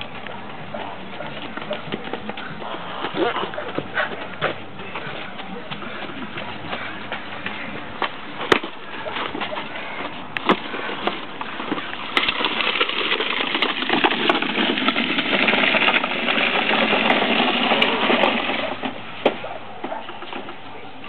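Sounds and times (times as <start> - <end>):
toy lawn mower clattering: 7.5 - 20.6.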